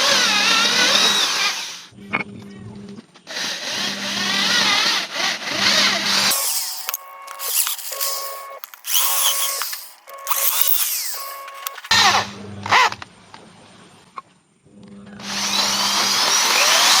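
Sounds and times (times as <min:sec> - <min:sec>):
electric power tool whining: 0:03.4 - 0:12.9, 0:15.2 - 0:17.0.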